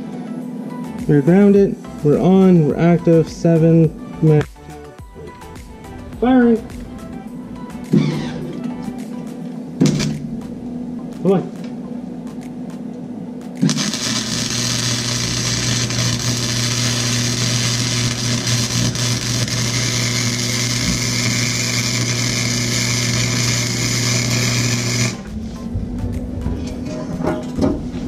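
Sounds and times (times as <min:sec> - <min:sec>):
welder arc hissing: 0:13.6 - 0:25.4.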